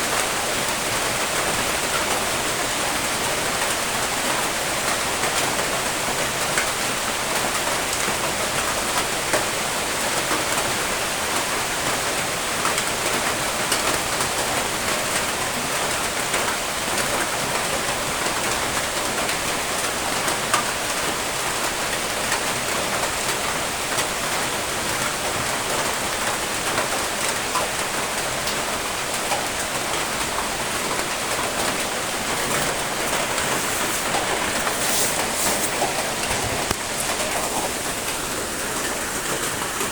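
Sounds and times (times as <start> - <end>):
rain hissing: 23.6 - 39.9.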